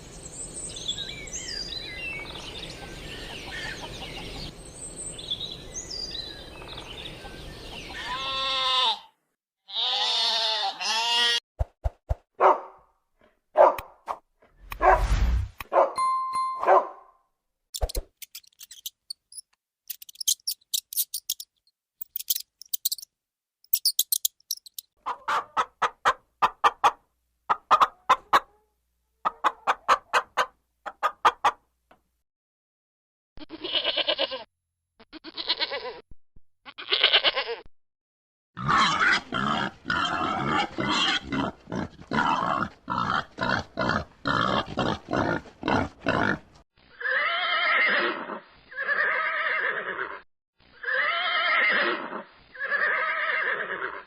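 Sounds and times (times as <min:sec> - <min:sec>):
high chirping animal calls: 0:00.8 - 0:04.5, 0:17.8 - 0:23.1, 0:23.7 - 0:24.9
animal bleats: 0:07.9 - 0:11.4, 0:33.4 - 0:36.0, 0:36.6 - 0:37.7, 0:38.6 - 0:50.2, 0:50.8 - 0:54.0
rapid rasping animal calls: 0:19.9 - 0:23.0, 0:23.7 - 0:25.6.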